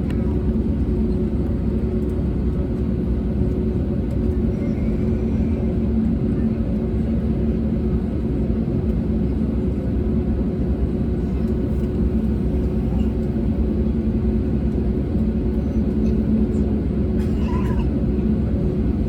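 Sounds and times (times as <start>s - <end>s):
airplane cabin drone: 0.0s - 19.0s.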